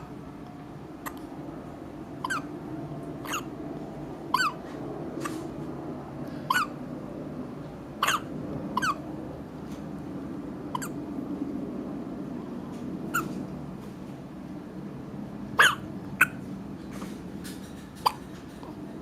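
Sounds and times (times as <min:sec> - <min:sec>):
baby hiccuping: 0:02.2 - 0:02.4, 0:08.0 - 0:09.0, 0:18.0 - 0:18.2.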